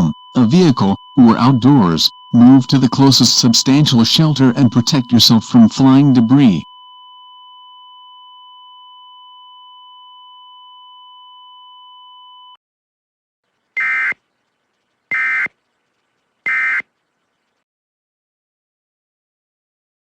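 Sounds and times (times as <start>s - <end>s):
steady electronic tone: 0.0s - 6.6s
buzzing data bursts: 13.8s - 14.2s, 15.1s - 15.6s, 16.4s - 16.9s.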